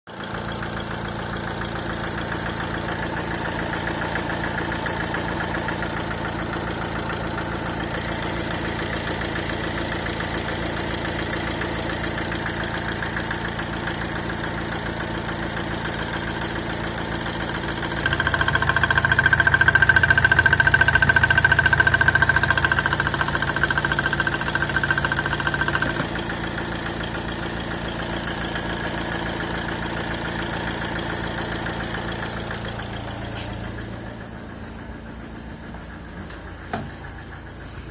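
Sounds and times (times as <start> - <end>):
diesel engine idling: 0.1 - 37.9
rhythmic ticking clatter: 17.5 - 26.4.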